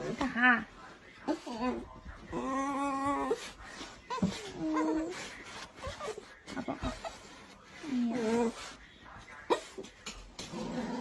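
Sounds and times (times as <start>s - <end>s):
dog whining: 4.1s - 6.2s.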